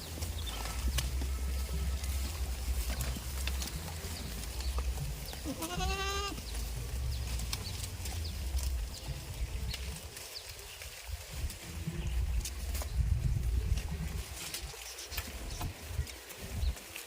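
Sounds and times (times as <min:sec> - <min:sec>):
steady low rumble: 0:00.0 - 0:16.8
goat bleating: 0:00.4 - 0:06.8.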